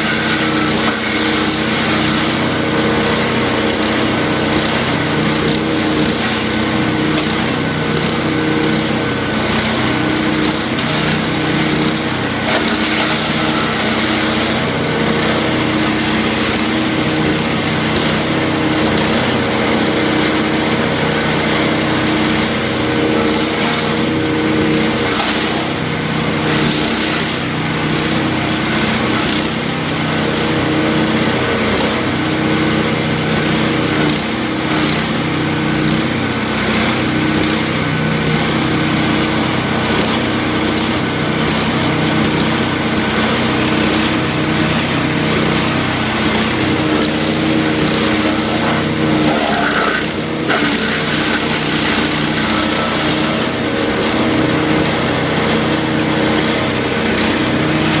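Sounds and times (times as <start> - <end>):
wood chipper engine running: 0.0 - 58.0
branches cracking in chipper: 46.8 - 54.2.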